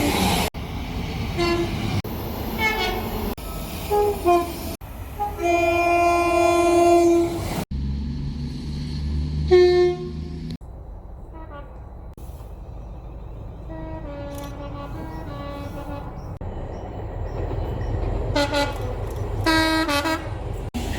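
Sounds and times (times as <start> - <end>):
train horn blasts: 1.4 - 1.8, 2.6 - 3.1, 3.9 - 7.5, 9.4 - 10.5, 11.3 - 11.8, 13.7 - 16.2, 18.3 - 18.8, 19.4 - 20.4
diesel engine rumble: 7.5 - 20.9.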